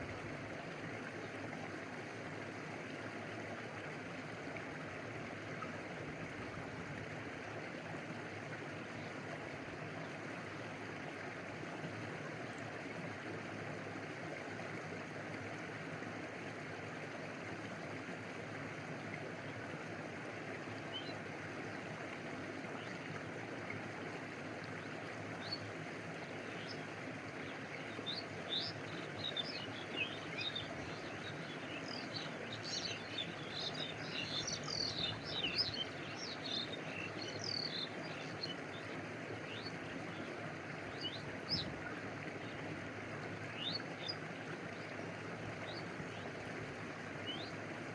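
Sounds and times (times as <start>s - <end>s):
stream flowing: 0.0s - 47.9s.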